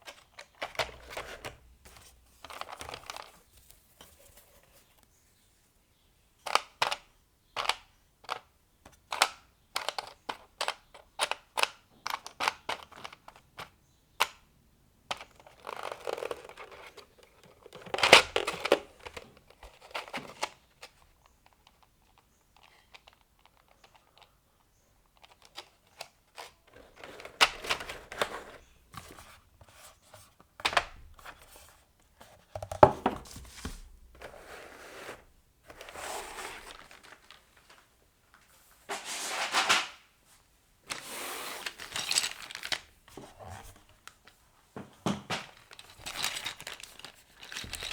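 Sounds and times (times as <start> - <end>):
wrapping rustling and crinkling: 33.1 - 40.0, 40.9 - 44.4, 45.3 - 47.9.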